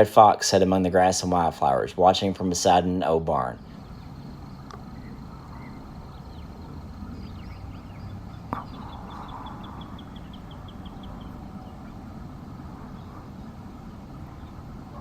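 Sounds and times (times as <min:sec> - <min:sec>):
birds chirping: 0:00.0 - 0:15.0
steady low rumble: 0:00.0 - 0:15.0
bird trill: 0:03.6 - 0:15.0.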